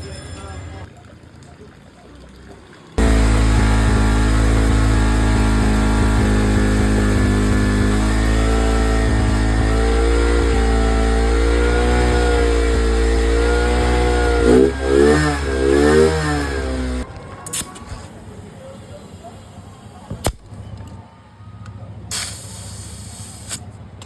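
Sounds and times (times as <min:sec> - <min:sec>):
motorcycle engine running and revving: 0:03.0 - 0:17.1.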